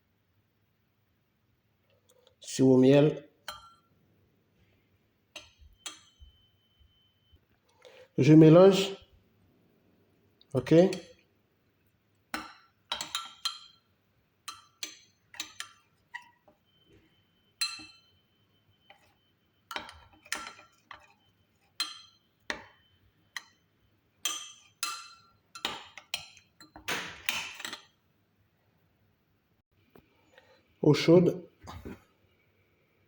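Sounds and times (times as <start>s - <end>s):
spoon clinking against cup: 5.4s - 6.5s, 12.4s - 13.9s, 14.5s - 16.6s, 17.6s - 18.2s, 18.8s - 23.6s.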